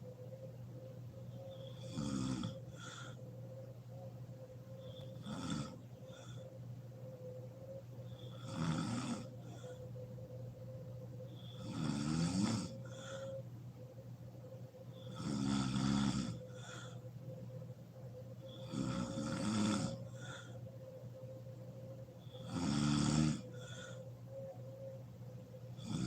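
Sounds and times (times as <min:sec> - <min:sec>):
faint steady hum: 0:00.0 - 0:26.0
faint breath sound: 0:01.2 - 0:11.8, 0:12.4 - 0:15.3, 0:16.0 - 0:19.2, 0:19.8 - 0:22.6, 0:23.3 - 0:26.0
woman snoring: 0:01.6 - 0:03.2, 0:04.9 - 0:06.4, 0:08.0 - 0:09.8, 0:11.4 - 0:13.3, 0:15.0 - 0:17.0, 0:18.4 - 0:20.6, 0:22.3 - 0:24.0, 0:25.8 - 0:26.0.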